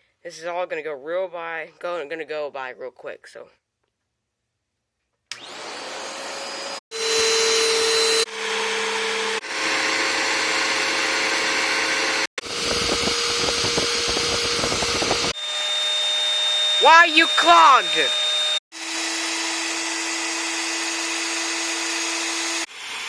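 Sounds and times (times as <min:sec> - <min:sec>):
vacuum cleaner motor whine: 0:05.3 - 0:23.0.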